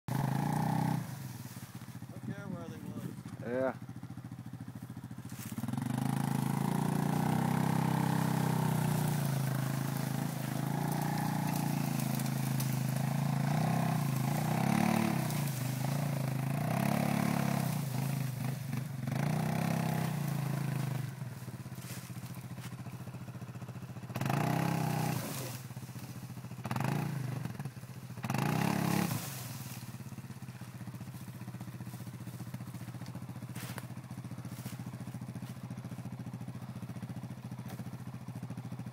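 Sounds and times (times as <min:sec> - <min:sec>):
vehicle engine revving: 0:00.0 - 0:38.9.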